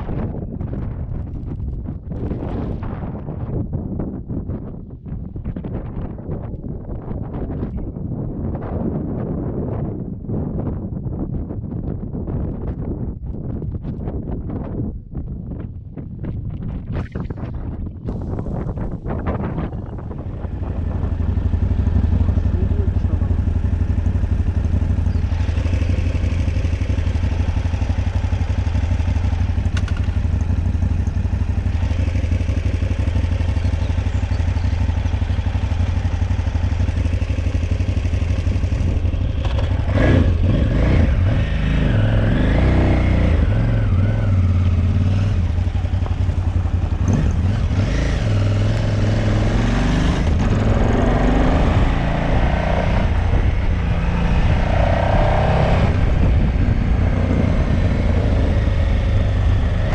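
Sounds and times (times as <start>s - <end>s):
motorcycle engine running: 16.1s - 59.9s.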